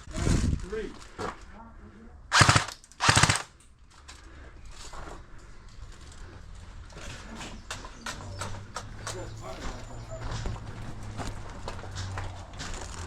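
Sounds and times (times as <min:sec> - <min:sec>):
airsoft gun full-auto bursts: 0:02.3 - 0:03.6.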